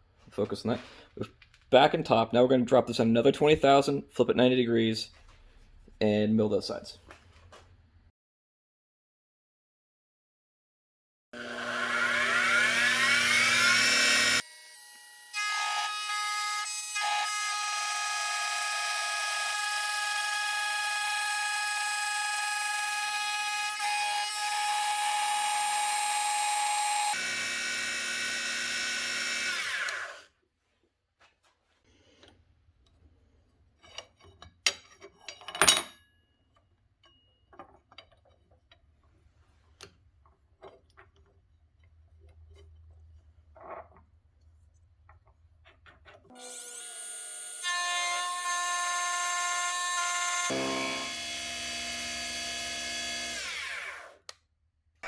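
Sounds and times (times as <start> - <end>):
mini mill motor whine: 11.4 - 14.4, 25.8 - 30.2, 50.4 - 54.2.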